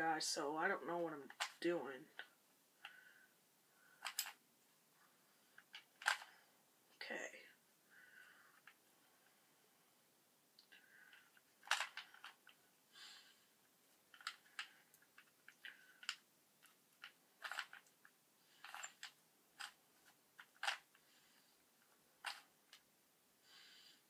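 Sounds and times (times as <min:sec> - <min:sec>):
plastic puzzle cube twisting clicks: 0:04.0 - 0:04.4, 0:05.6 - 0:06.3, 0:10.6 - 0:12.6, 0:14.1 - 0:18.0, 0:18.6 - 0:19.8, 0:20.4 - 0:21.0, 0:22.2 - 0:22.8.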